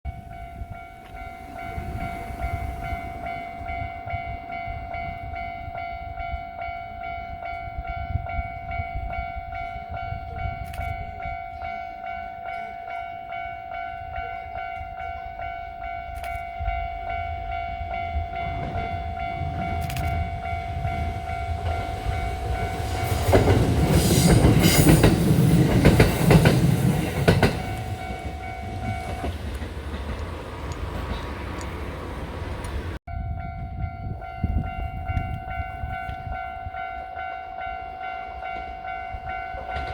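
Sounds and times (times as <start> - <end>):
level crossing warning bell ringing: 0.1 - 30.0, 33.1 - 39.9
train wheels clattering over rail joints: 21.6 - 31.6.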